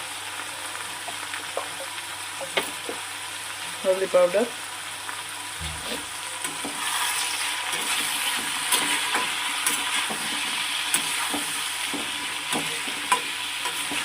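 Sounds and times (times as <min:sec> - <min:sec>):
masala sizzling in hot oil: 0:00.0 - 0:14.0.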